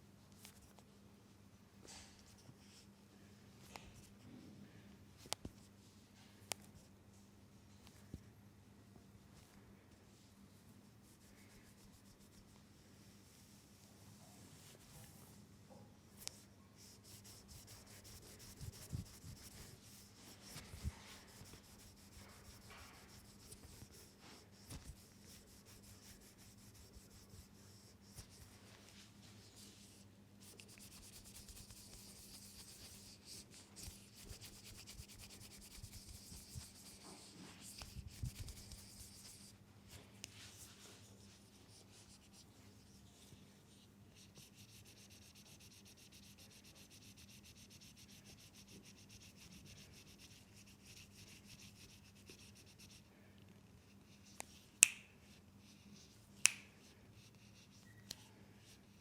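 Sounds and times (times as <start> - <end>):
hands rubbing oiled skin: 16.3 - 42.9
sharp snaps: 54.8 - 55.1, 56.4 - 56.8.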